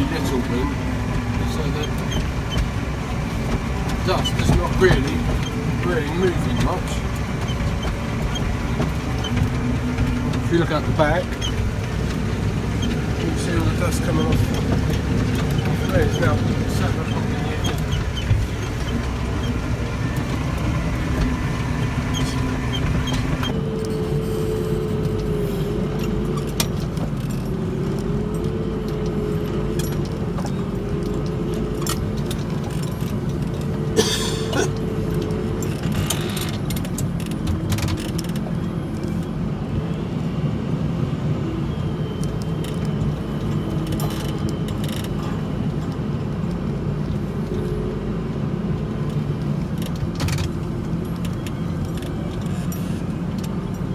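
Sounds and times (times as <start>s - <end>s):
light clicks and rattles: 0.0s - 23.6s
tractor engine running: 0.0s - 53.9s.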